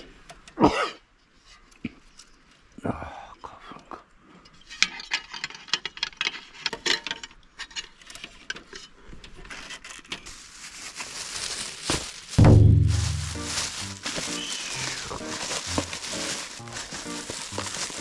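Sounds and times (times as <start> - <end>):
rustling hiss: 10.6 - 18.0
loud music with low bass: 12.4 - 14.0.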